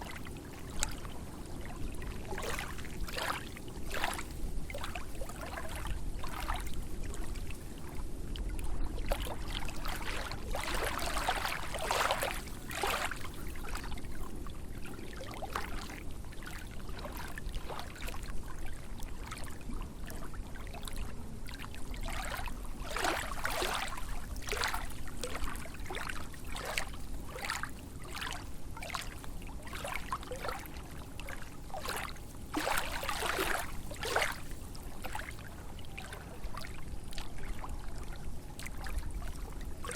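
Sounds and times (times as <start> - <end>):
lake waves lapping and splashing: 0.0 - 39.9.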